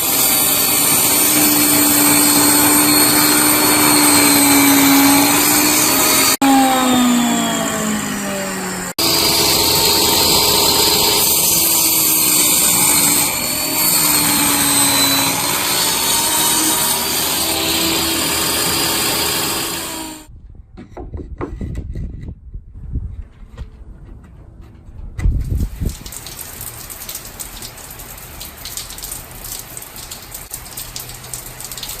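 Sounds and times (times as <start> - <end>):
power tool whirring: 0.0 - 20.3.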